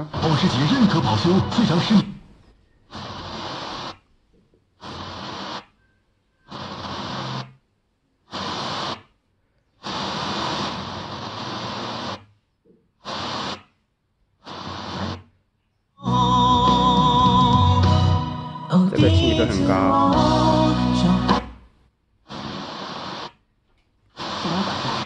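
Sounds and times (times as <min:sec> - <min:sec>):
radio static hiss bursts: 0:00.0 - 0:04.2, 0:04.8 - 0:05.8, 0:06.4 - 0:09.2, 0:09.8 - 0:12.4, 0:13.0 - 0:13.8, 0:14.4 - 0:15.4, 0:22.2 - 0:23.5, 0:24.1 - 0:25.0.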